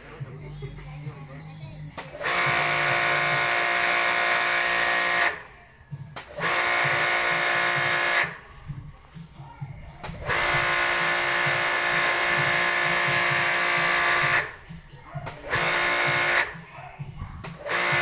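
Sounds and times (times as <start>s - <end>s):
small electric motor whining: 10.1s - 14.8s, 17.5s - 18.0s.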